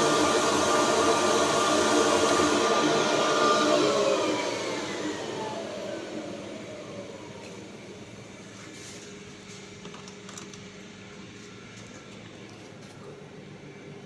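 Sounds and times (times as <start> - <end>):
electric motor whine spinning down: 0.0 - 8.4.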